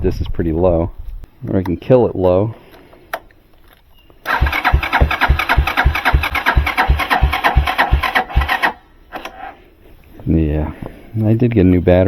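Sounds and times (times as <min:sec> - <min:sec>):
engine cranking without firing: 0:04.3 - 0:09.3.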